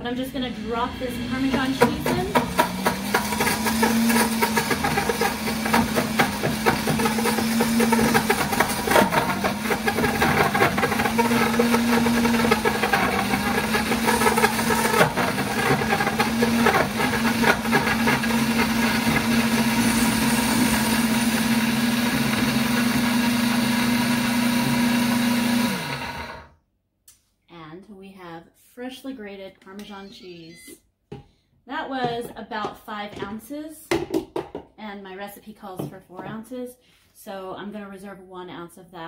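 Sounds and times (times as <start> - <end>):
blender motor running: 0.5 - 26.5.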